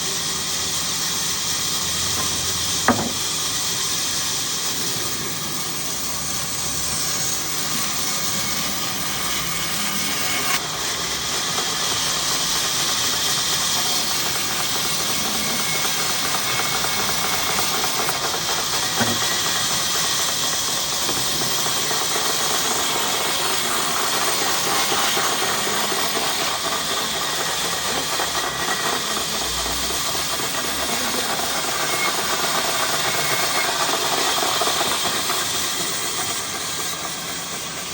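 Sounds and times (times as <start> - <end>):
woodcutting machine hissing: 0.0 - 37.9
sharp knocks: 2.2 - 3.2.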